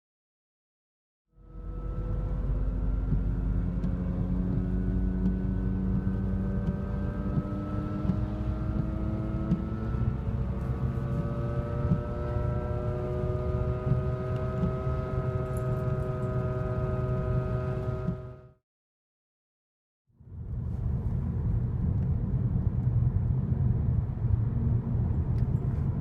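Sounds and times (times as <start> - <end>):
wheel bearing drone: 1.3 - 18.6
road noise rumble: 1.4 - 18.5, 20.2 - 26.0.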